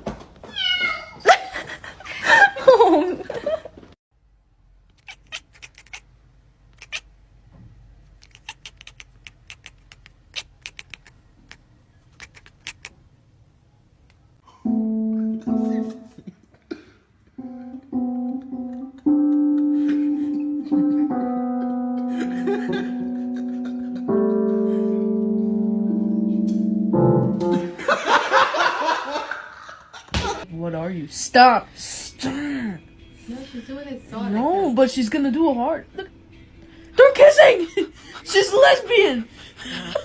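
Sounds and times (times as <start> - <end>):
piano notes and chords: 14.4 - 16.4, 17.3 - 28.0.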